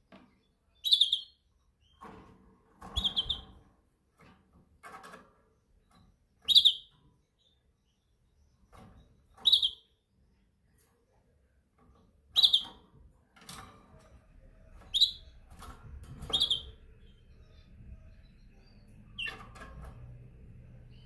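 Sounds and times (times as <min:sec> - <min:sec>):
canary chirping: 0:00.1 - 0:02.2, 0:02.8 - 0:03.9, 0:04.8 - 0:11.2, 0:11.8 - 0:21.0.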